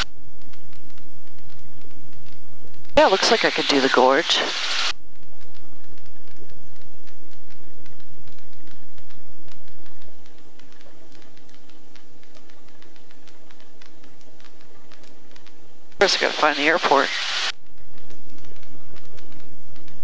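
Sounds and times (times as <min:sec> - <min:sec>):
sharp ticks: 0:04.6 - 0:20.0.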